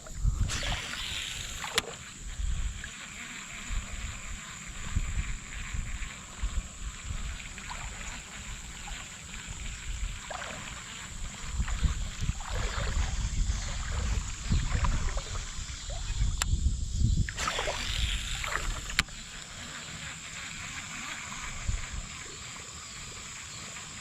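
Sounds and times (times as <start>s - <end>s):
low rumble on microphone: 0.0s - 1.6s, 9.4s - 19.0s
sharp click: 0.5s - 2.0s, 17.3s - 19.1s
water sloshing around wading legs: 7.6s - 16.2s.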